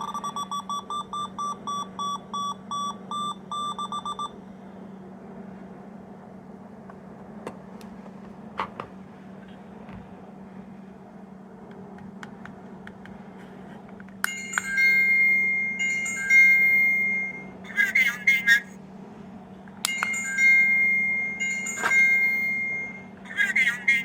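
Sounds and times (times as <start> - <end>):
low steady hum: 0.0 - 24.0
electronic chime tune: 14.4 - 17.5, 19.9 - 23.1.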